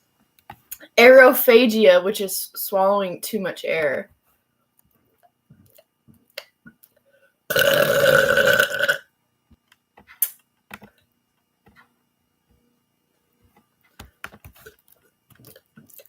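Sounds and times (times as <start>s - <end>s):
loud burp: 7.5s - 9.1s.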